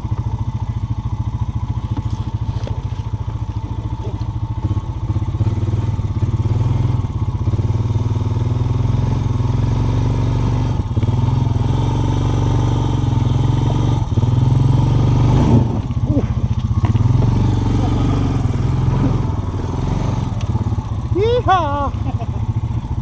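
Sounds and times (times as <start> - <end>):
off-road vehicle engine running: 0.0 - 23.0
knocks from rough ride: 1.6 - 7.6, 10.7 - 21.0.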